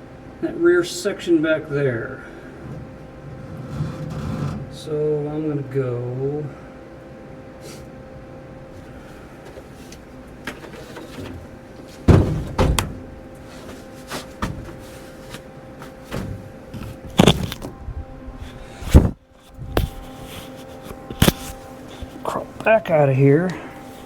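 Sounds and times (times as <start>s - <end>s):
steady faint hum: 0.0s - 24.0s
thumps against car sheet metal: 10.4s - 17.6s.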